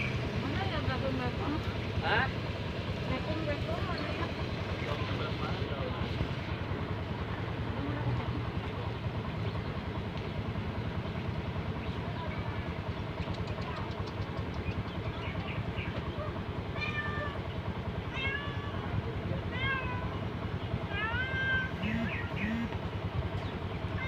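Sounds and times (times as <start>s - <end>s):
low rumble of traffic: 0.0s - 24.0s
cat meowing: 16.8s - 17.4s, 18.1s - 18.9s, 19.5s - 20.2s, 20.9s - 22.3s.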